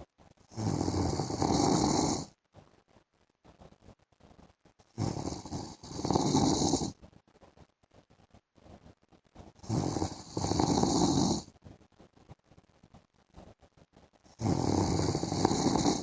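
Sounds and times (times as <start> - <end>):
man snoring: 0.6 - 2.3, 5.0 - 6.9, 9.6 - 11.5, 14.4 - 16.0.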